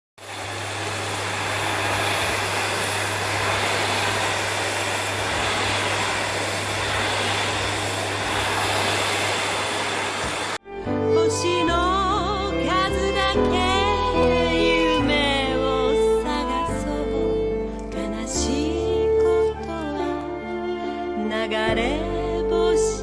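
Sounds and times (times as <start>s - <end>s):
vacuum cleaner running: 0.2s - 23.0s
music: 10.6s - 23.0s.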